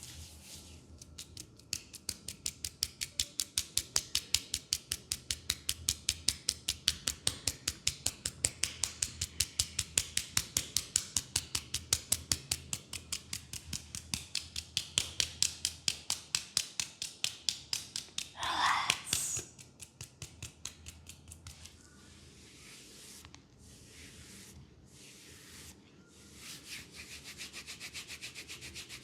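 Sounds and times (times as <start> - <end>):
soft rubbing hiss: 0.0 - 1.0, 21.1 - 29.0.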